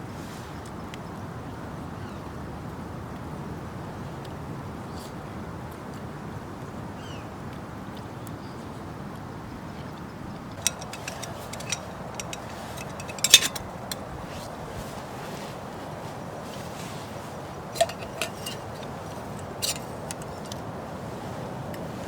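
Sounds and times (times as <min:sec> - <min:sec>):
metal cookware clinking: 0:10.5 - 0:14.0, 0:17.7 - 0:20.6.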